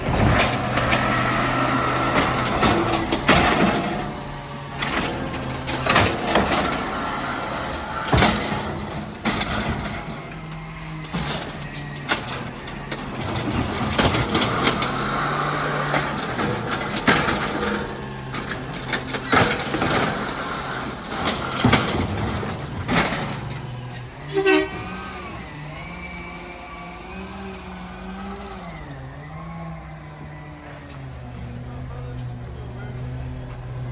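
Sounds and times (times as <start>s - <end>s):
bangs and clanks of recycling: 0.0s - 32.1s
diesel truck engine running: 0.0s - 33.9s
truck horn honk: 24.2s - 25.4s.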